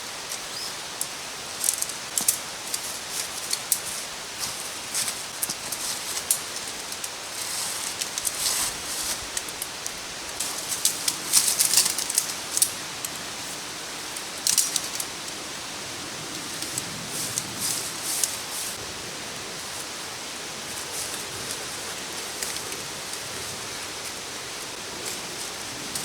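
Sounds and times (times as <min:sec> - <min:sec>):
creek and waterfall rushing: 0:00.0 - 0:26.0
clicks and rustles of handling: 0:01.0 - 0:13.2, 0:14.2 - 0:15.1.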